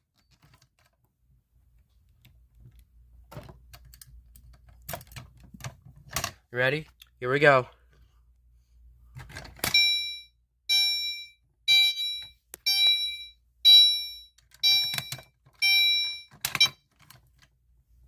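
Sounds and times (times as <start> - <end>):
fire alarm horn pulsing: 9.8 - 16.4.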